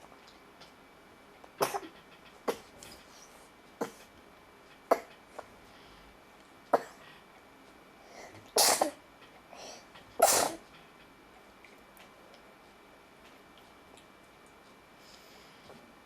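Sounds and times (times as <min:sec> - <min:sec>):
child sneezing: 0:08.6 - 0:09.0, 0:10.2 - 0:10.6.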